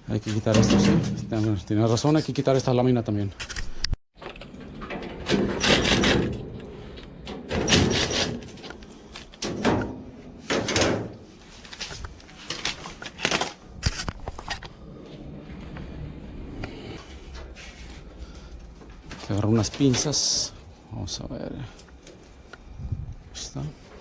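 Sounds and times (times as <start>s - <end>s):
sheet-metal panel scraping and rattling: 4.2s - 8.8s.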